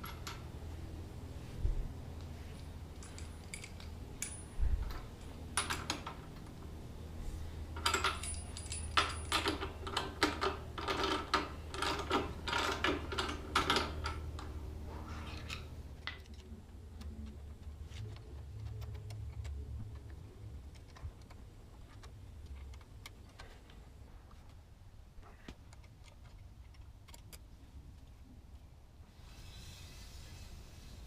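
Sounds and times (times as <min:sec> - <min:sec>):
steady low hum: 0:00.0 - 0:31.0
hand tools clinking: 0:02.5 - 0:06.6, 0:07.7 - 0:16.5.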